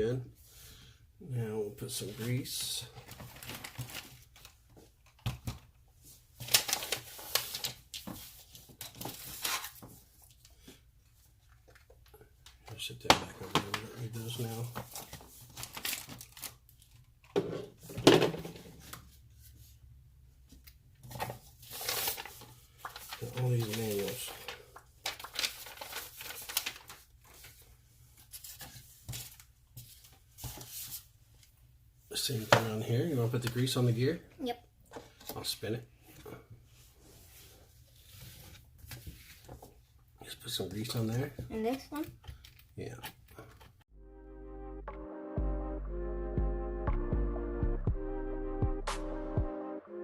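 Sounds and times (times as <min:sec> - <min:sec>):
packaging crinkling and rustling: 0:02.9 - 0:04.8, 0:06.4 - 0:10.4, 0:13.5 - 0:17.2, 0:21.1 - 0:27.7.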